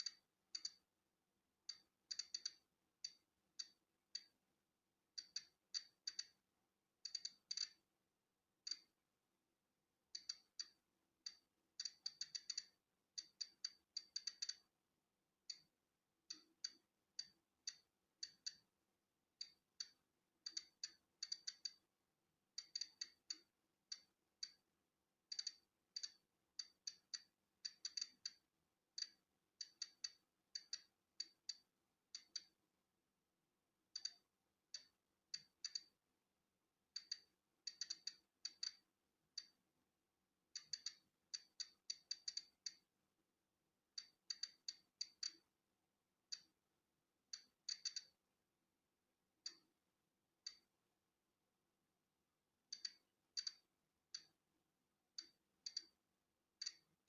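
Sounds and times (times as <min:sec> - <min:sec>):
geiger counter clicking: 0:00.0 - 0:00.8, 0:01.7 - 0:04.4, 0:05.2 - 0:06.4, 0:07.1 - 0:07.8, 0:10.2 - 0:14.7, 0:15.5 - 0:15.7, 0:16.3 - 0:18.7, 0:19.4 - 0:21.8, 0:22.6 - 0:24.6, 0:25.3 - 0:28.4, 0:29.0 - 0:32.6, 0:33.9 - 0:35.9, 0:37.0 - 0:38.8, 0:40.5 - 0:42.8, 0:44.0 - 0:45.5, 0:47.3 - 0:48.2, 0:49.4 - 0:49.7, 0:50.4 - 0:50.7, 0:52.7 - 0:54.4, 0:55.2 - 0:56.0, 0:56.6 - 0:56.9.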